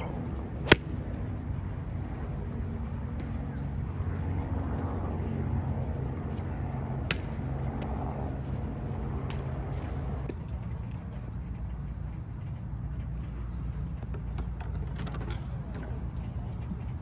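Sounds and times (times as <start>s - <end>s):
vehicle engine humming: 0.0s - 2.8s.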